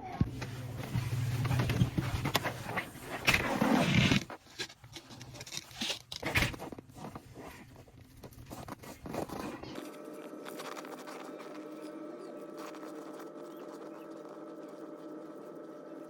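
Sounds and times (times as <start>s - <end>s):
extension cord scraping and rustling: 0.2s - 11.9s.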